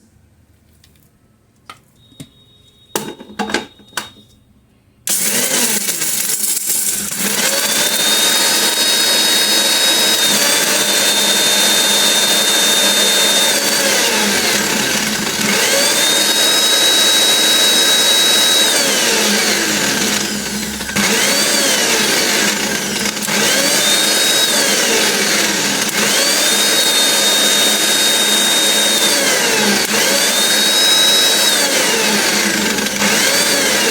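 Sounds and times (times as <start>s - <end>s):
clicks and knocks: 3.0s - 4.4s
mixer grinder motor whine: 5.1s - 33.9s.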